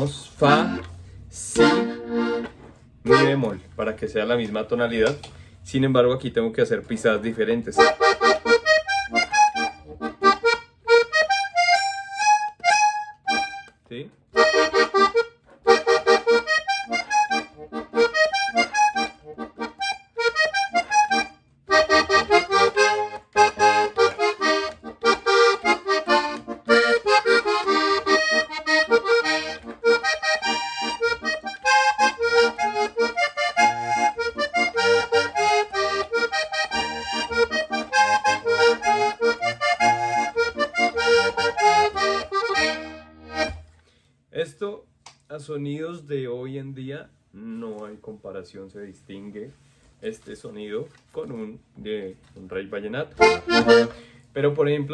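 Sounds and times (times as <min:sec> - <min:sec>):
button accordion playing: 0:00.0 - 0:03.6, 0:07.7 - 0:43.7, 0:53.2 - 0:54.1.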